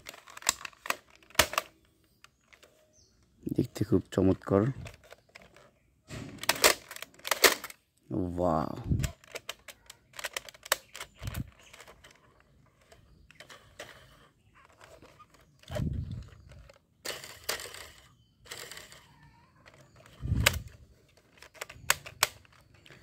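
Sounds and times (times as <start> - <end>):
plastic toy guns clicking: 0.0 - 2.7, 6.4 - 7.8, 9.0 - 23.0
rustling: 4.7 - 7.8, 9.0 - 19.0.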